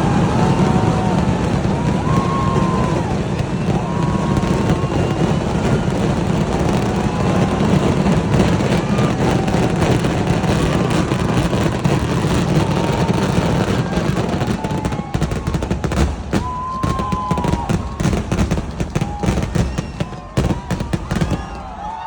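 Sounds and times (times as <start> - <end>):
firecrackers rumbling barrage: 0.0 - 22.0
whistling tones: 2.0 - 9.6, 19.0 - 22.0.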